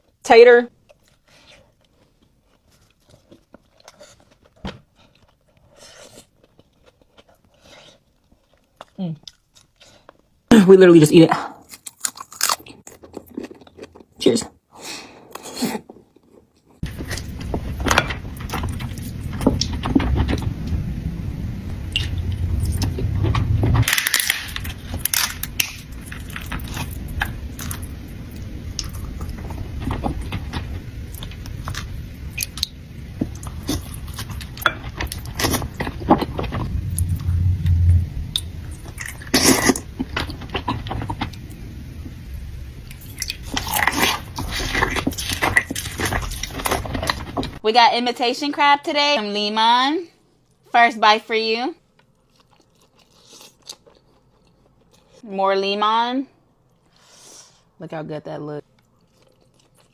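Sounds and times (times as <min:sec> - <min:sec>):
wet chewing and crunching: 0:00.8 - 0:10.4, 0:11.6 - 0:14.4, 0:15.2 - 0:20.8, 0:21.7 - 0:47.6, 0:51.8 - 0:55.2, 0:58.6 - 0:59.9
low rumble: 0:16.8 - 0:47.6.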